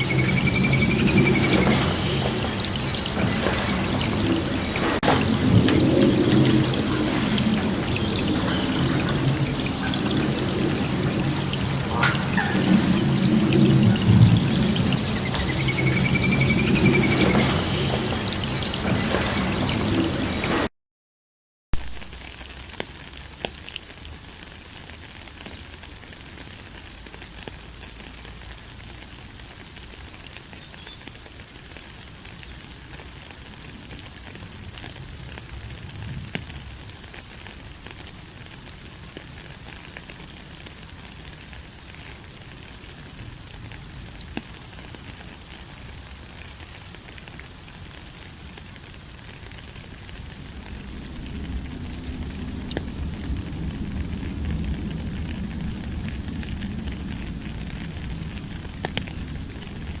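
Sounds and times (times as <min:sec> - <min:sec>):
steady rain falling: 0:00.0 - 0:20.7, 0:21.8 - 1:00.0.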